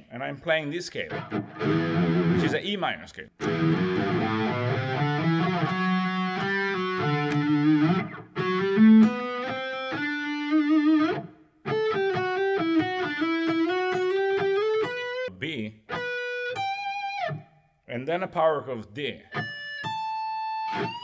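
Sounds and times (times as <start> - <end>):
distorted electric guitar melody: 1.1 - 2.6, 3.4 - 17.5, 19.3 - 21.0.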